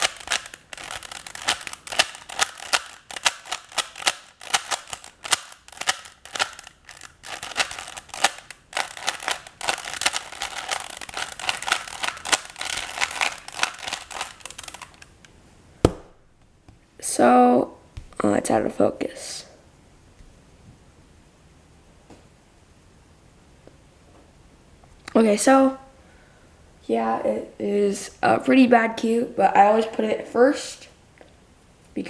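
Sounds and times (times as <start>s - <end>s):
puzzle cube plastic clicks: 0.0s - 16.0s.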